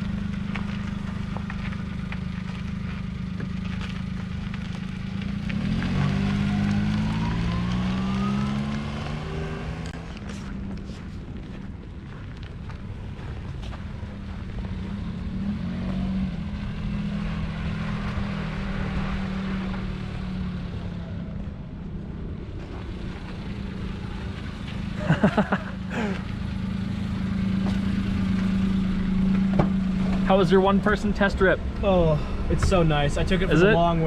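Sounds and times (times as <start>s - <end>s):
small car engine running: 0.0s - 11.0s, 22.4s - 34.0s.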